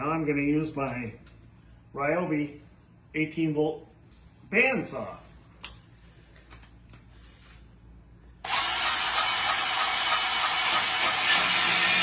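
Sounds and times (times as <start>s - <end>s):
band saw cutting metal: 8.5s - 12.0s.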